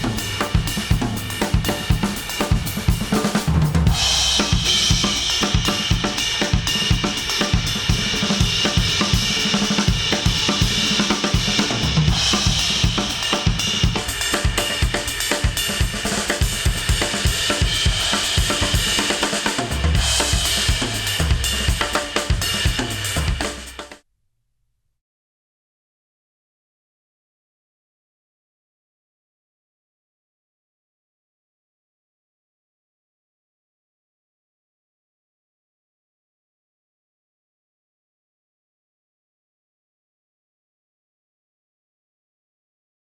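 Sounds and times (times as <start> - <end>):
instrumental music with drums: 0.0 - 24.0.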